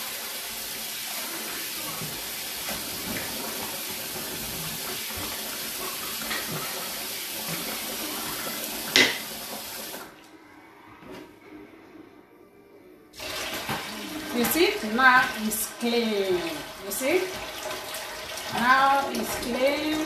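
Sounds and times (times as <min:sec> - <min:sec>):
tap water running into a pot: 0:00.0 - 0:10.2, 0:13.2 - 0:20.0.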